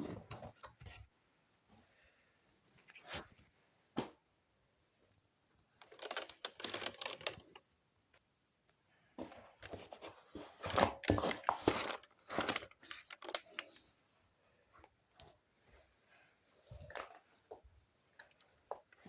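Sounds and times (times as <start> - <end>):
plastic rustling: 5.8 - 7.6, 9.8 - 13.9
computer keyboard keys clattering: 6.0 - 7.4.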